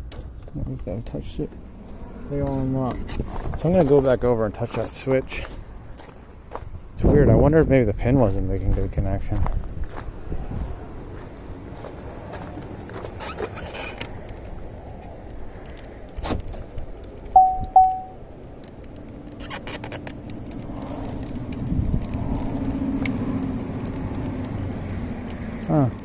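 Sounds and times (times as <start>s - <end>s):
handling clicks and rustles: 11.6s - 26.0s
car warning chime: 17.4s - 18.2s.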